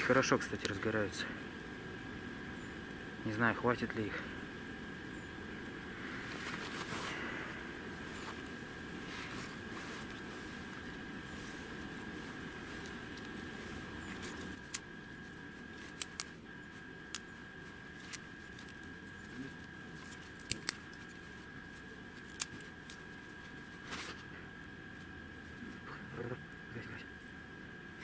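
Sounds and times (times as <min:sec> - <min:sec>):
campfire crackling and popping: 0:00.0 - 0:25.9.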